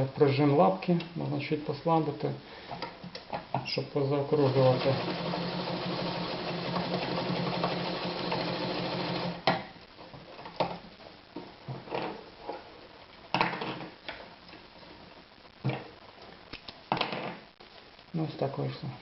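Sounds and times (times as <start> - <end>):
sewing machine stitching: 4.3 - 9.5.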